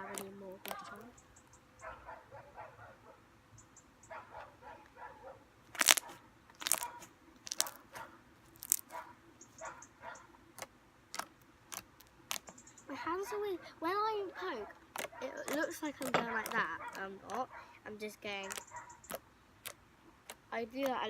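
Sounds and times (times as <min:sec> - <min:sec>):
slime sticky crackles: 0:00.0 - 0:01.1, 0:05.7 - 0:09.0, 0:10.5 - 0:12.7, 0:14.6 - 0:17.4, 0:18.3 - 0:21.0
slime snapping pops: 0:05.8 - 0:06.0, 0:06.6 - 0:07.8, 0:08.6 - 0:08.8, 0:14.9 - 0:16.6.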